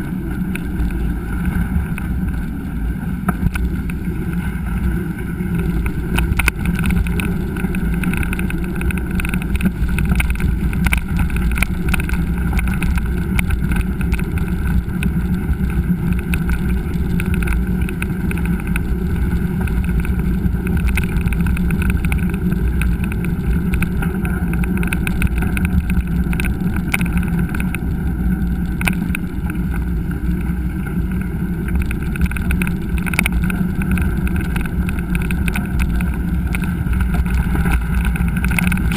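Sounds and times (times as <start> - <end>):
bike knocking and rattling: 0.0 - 38.9
wind rush on camera: 0.0 - 38.9.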